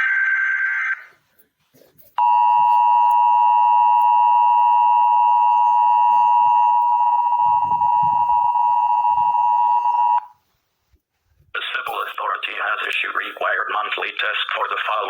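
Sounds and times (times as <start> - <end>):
two-tone alarm: 0.0 - 1.1, 2.2 - 10.4.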